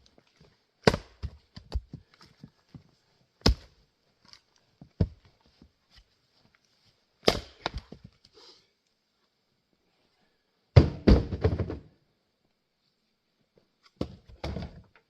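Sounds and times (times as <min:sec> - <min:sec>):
axe splitting firewood: 0:00.8 - 0:02.3, 0:03.4 - 0:03.8, 0:07.2 - 0:08.1.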